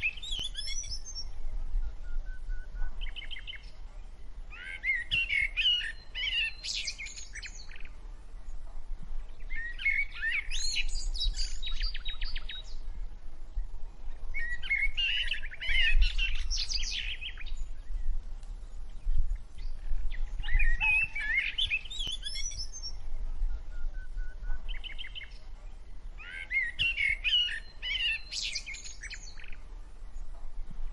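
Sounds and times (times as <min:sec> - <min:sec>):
songbird chirping and warbling: 0:00.0 - 0:30.9.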